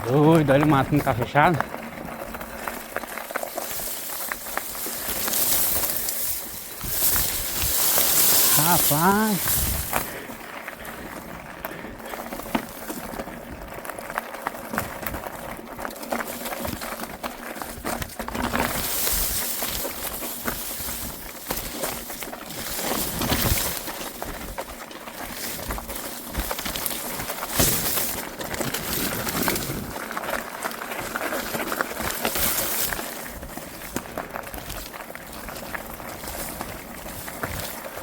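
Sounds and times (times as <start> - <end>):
brush rustling and crackling: 0.0 - 38.0
footsteps and small clicks: 0.3 - 8.5, 9.4 - 38.0
vegetation swishing: 5.0 - 10.0.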